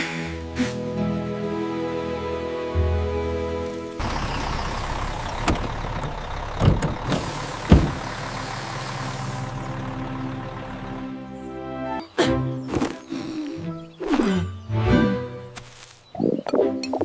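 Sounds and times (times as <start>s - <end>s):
tractor engine running: 0.9s - 12.0s
sharp knocks or clunks: 6.6s - 8.0s.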